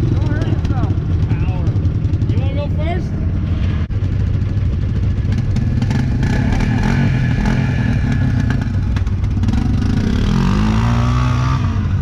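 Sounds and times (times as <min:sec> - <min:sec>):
vehicle engine revving: 0:05.2 - 0:12.0.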